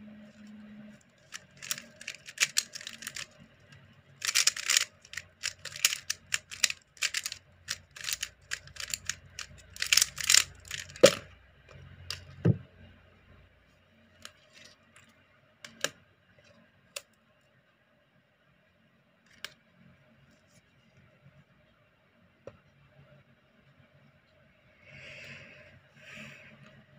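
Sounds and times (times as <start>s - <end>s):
plastic puzzle cube clacking: 1.2s - 11.3s, 15.7s - 16.0s.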